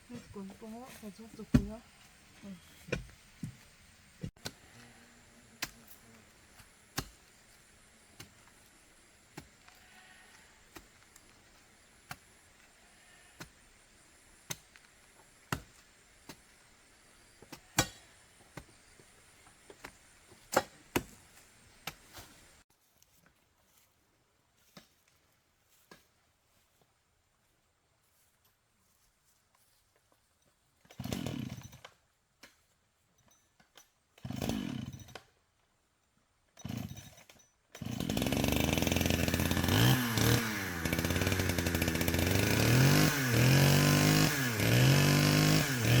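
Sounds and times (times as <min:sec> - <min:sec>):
hand hoe chopping into earth: 0:01.4 - 0:02.0, 0:02.7 - 0:04.8, 0:05.6 - 0:09.8, 0:10.6 - 0:12.7, 0:14.4 - 0:16.6, 0:17.4 - 0:22.4.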